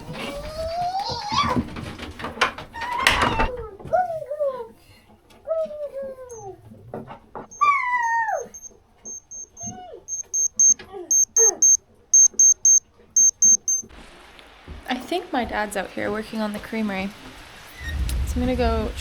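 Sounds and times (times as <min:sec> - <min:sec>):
animal crying: 0:07.5 - 0:08.6
high electronic beeping: 0:08.0 - 0:13.9.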